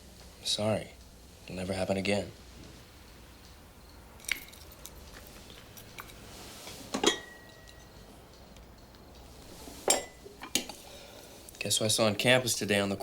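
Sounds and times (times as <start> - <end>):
cutlery clinking on plates: 6.9 - 8.0, 9.8 - 10.8.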